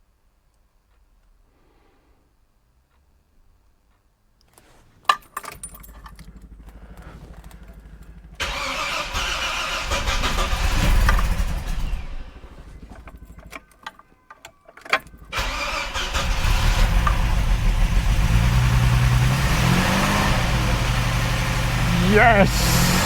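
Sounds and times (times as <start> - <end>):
car engine running: 6.0 - 13.4, 15.1 - 23.0
starter motor cranking engine: 6.0 - 13.7, 15.0 - 23.0.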